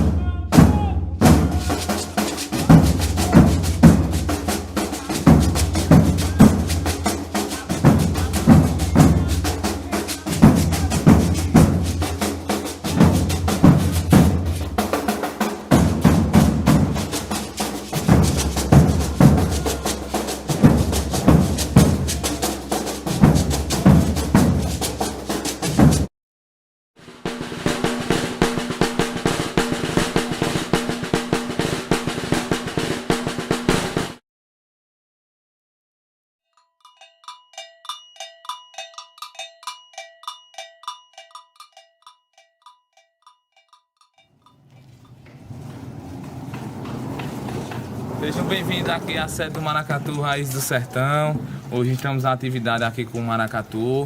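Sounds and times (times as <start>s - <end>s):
deep bass drum strokes: 0.0s - 26.1s
snare drum and rattle strokes: 1.2s - 26.1s, 27.0s - 34.2s, 44.9s - 50.7s
cowbell strikes: 36.5s - 44.9s.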